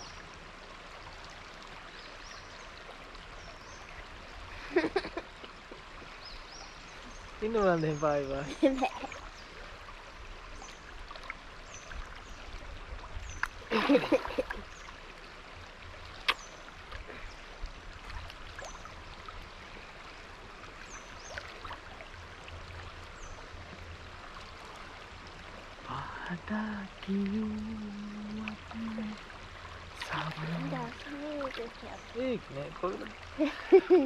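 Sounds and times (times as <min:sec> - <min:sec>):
stream running water: 0:00.0 - 0:34.0.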